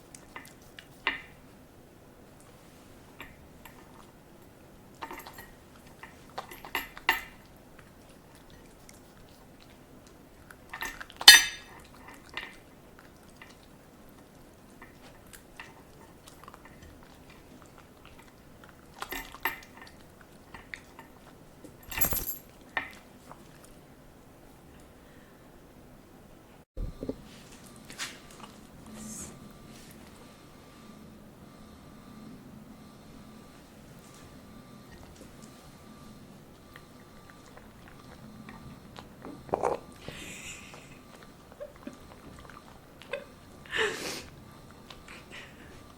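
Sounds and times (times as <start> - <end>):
dog crunching broccoli: 4.9 - 21.8, 36.5 - 40.2, 40.8 - 43.6.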